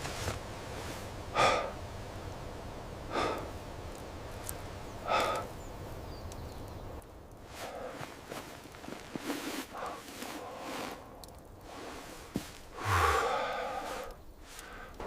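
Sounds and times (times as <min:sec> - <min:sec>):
low steady background: 0:00.0 - 0:15.0
person breathing out: 0:12.7 - 0:15.0.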